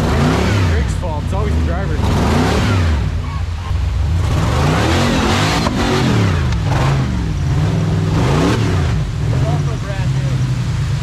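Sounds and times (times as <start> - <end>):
buggy engine revving: 0.0 - 11.0.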